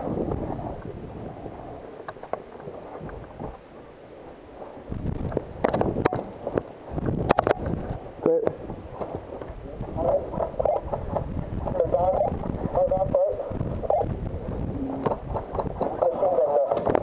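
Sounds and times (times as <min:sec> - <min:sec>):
rustling movement noise: 0:00.0 - 0:17.0
wind buffeting microphone: 0:00.0 - 0:17.0
sharp clicks and knocks: 0:05.2 - 0:07.8, 0:09.0 - 0:11.8, 0:15.0 - 0:16.0.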